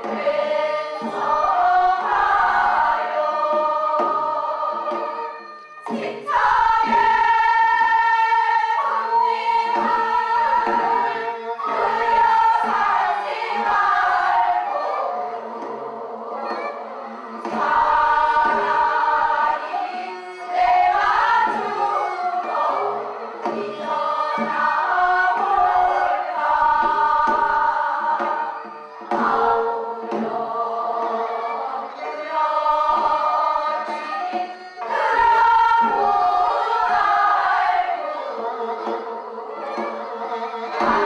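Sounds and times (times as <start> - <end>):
group of voices singing: 0.0 - 41.0.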